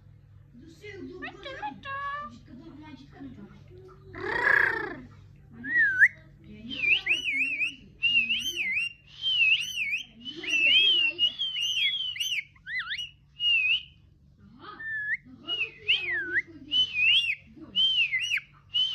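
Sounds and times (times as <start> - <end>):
parrot whistling a song: 5.6 - 14.0, 14.8 - 18.9.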